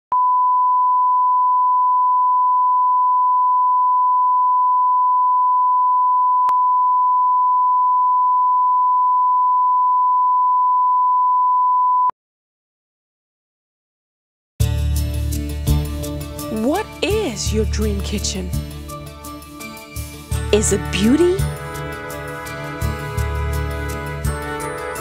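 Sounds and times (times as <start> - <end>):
single-pitch test tone: 0.1 - 12.1.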